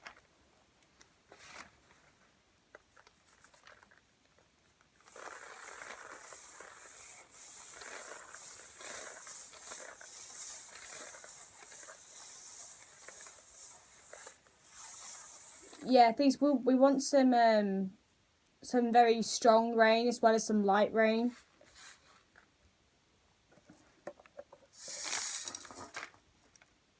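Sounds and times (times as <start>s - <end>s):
rain sound effect pattering hiss: 5.0s - 16.4s, 24.7s - 26.1s.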